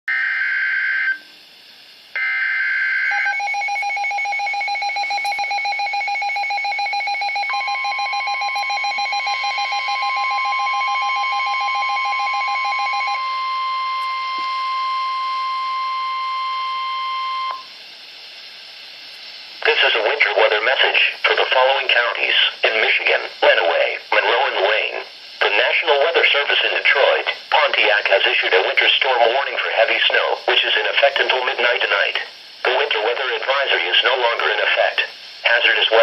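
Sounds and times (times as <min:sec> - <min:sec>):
steady warning alarm tone: 0:00.1 - 0:01.3, 0:02.2 - 0:17.8, 0:19.6 - 0:36.0
rapidly pulsing alert beep: 0:03.1 - 0:13.2.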